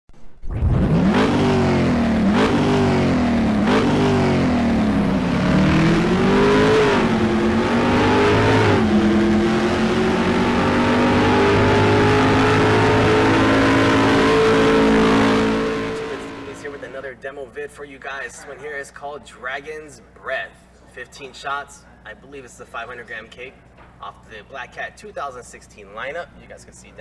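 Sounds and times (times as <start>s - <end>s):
car engine revving: 0.5s - 17.0s.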